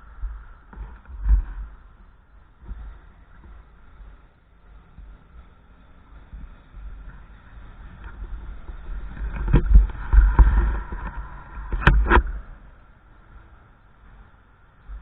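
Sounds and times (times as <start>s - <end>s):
wind buffeting microphone: 6.1s - 15.0s.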